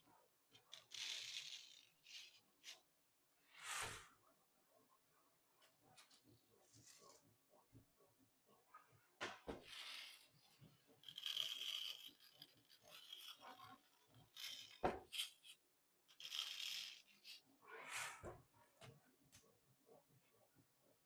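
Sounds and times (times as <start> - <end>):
desiccant beads rattling: 11.0 - 15.5, 16.1 - 17.4.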